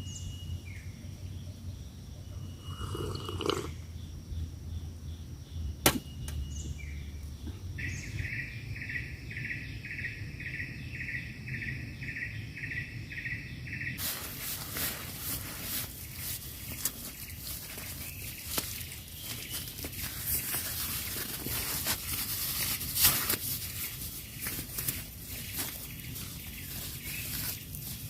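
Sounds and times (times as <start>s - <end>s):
rustling and crackling: 14.0s - 28.0s.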